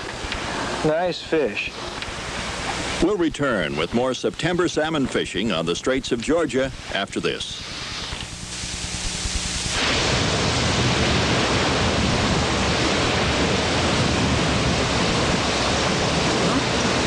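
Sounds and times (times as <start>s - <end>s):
water rushing around a boat: 9.6s - 17.0s.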